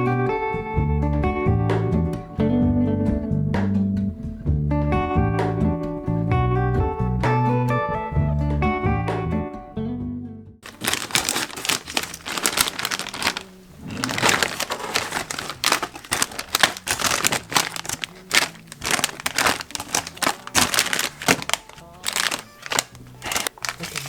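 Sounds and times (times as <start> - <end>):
crinkling and rustling: 10.6 - 24.0.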